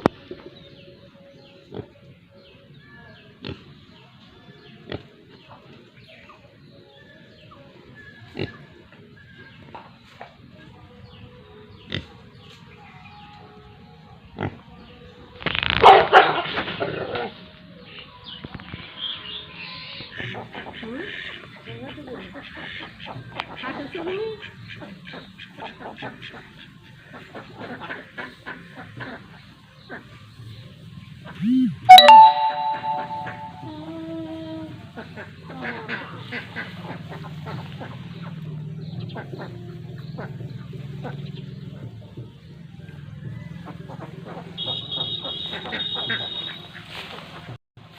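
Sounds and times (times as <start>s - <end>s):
ducks quacking: 20.0s - 30.2s, 34.9s - 38.4s, 43.6s - 47.6s
farm animal calling: 43.7s - 47.0s.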